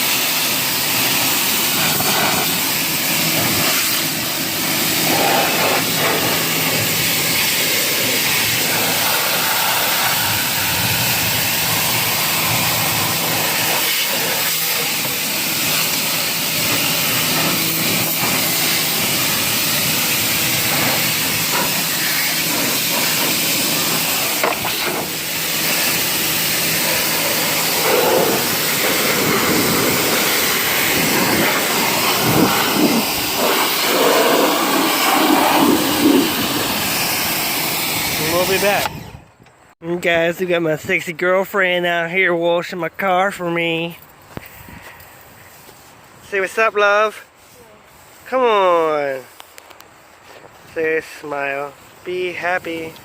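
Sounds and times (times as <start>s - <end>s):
pressure washer spraying: 0.0s - 39.1s.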